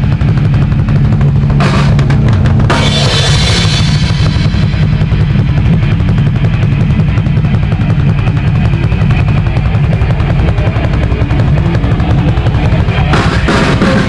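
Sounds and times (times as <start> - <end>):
fast bass drum: 0.0 - 14.0
heavy metal band playing live: 0.9 - 6.4, 11.8 - 14.0
cymbal crashes: 1.2 - 6.0.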